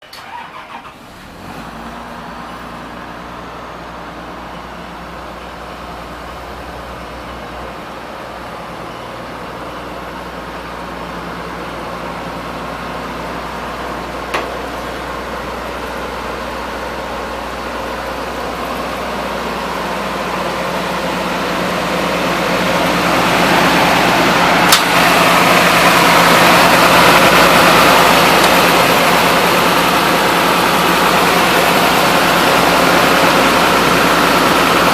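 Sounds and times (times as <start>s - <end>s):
excavator diesel engine running: 0.0s - 34.9s.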